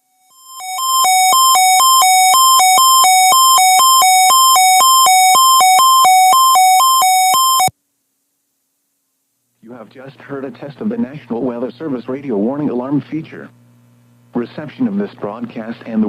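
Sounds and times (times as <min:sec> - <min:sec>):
electronic two-tone alarm: 0:00.0 - 0:07.7.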